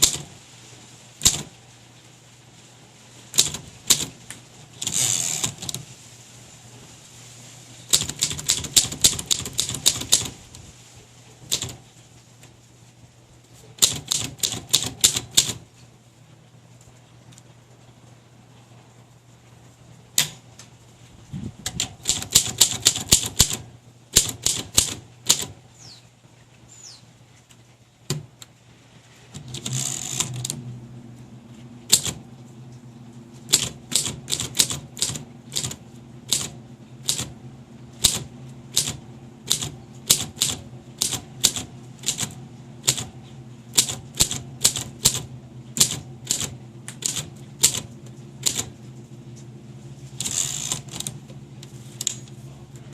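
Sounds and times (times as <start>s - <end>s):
manual typewriter keystrokes: 0.0s - 0.3s, 1.2s - 1.6s, 3.4s - 4.2s, 4.8s - 5.9s, 7.9s - 10.4s, 11.4s - 11.8s, 13.8s - 15.6s, 21.6s - 25.6s, 29.4s - 30.6s, 31.9s - 32.3s, 33.5s - 37.4s, 38.0s - 48.8s, 50.2s - 51.2s
typewriter rasp: 0.0s - 0.3s, 1.2s - 1.6s, 3.4s - 4.2s, 4.8s - 5.9s, 7.9s - 10.4s, 11.5s - 11.8s, 13.8s - 15.6s, 21.7s - 25.6s, 29.4s - 30.6s, 31.9s - 32.2s, 33.5s - 37.4s, 38.0s - 48.7s, 50.2s - 51.2s
low hum: 28.4s - 52.9s.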